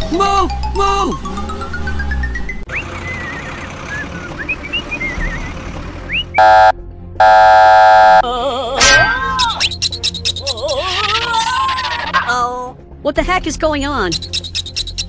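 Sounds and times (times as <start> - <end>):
light background music: 4.0 - 15.0
vehicle horn honking: 6.4 - 8.2.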